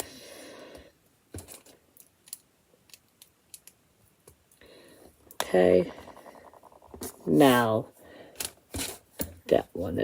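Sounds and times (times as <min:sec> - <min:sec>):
plastic bricks clicking: 0:01.5 - 0:03.8.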